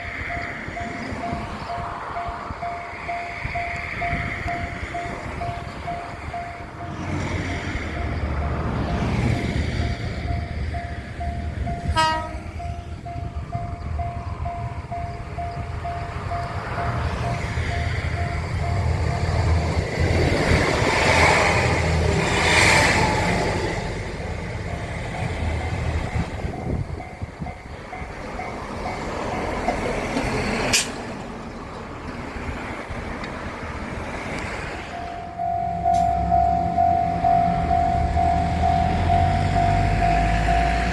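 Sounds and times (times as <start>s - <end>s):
level-crossing alarm: 0.0s - 19.8s, 22.7s - 29.8s, 34.8s - 40.9s
train rumbling past: 0.0s - 40.9s
vehicle noise: 0.0s - 40.9s
train horn blast: 11.8s - 12.6s.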